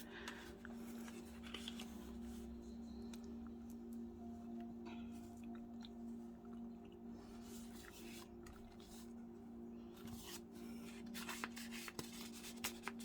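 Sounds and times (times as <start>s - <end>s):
steady low hum: 0.0s - 13.0s
paper rustling and rubbing: 0.8s - 2.5s, 7.4s - 9.2s, 10.0s - 13.0s.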